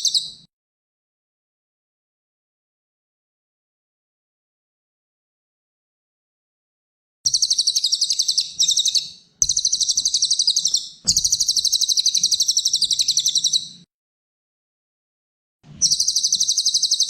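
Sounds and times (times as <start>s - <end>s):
songbird singing rapid trills: 7.3s - 13.8s.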